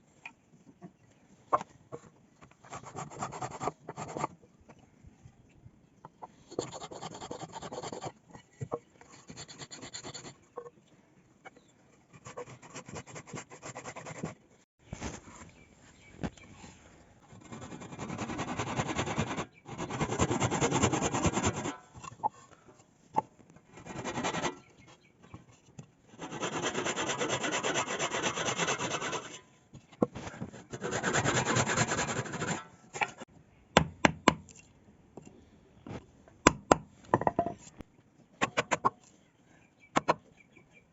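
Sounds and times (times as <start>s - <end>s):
hand tool rasping wood: 26.2s - 29.4s, 30.6s - 32.6s.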